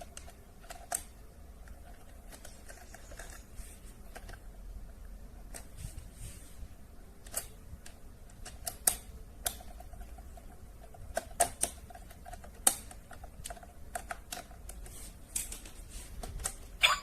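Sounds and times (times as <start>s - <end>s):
hard objects clicking and tapping: 7.2s - 14.8s.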